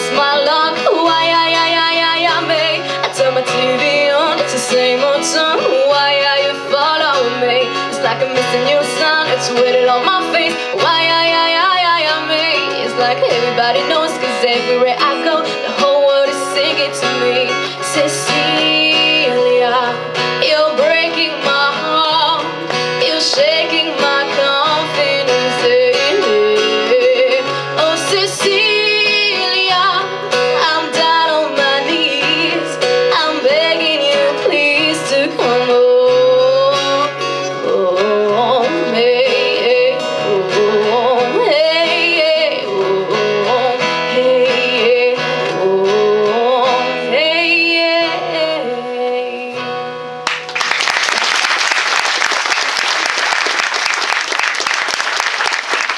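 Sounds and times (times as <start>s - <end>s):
woman singing wordless runs: 0.0s - 49.6s
strummed guitar: 0.0s - 50.9s.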